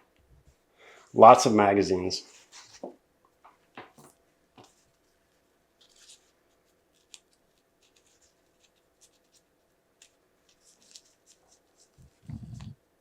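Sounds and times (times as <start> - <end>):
packaging rustling: 5.8 - 12.2.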